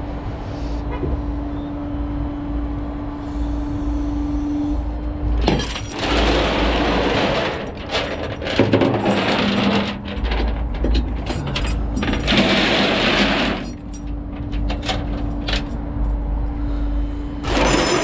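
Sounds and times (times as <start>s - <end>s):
heavy vehicle rumbling: 0.0s - 18.0s
hissing clattering mechanical noise: 2.8s - 16.7s.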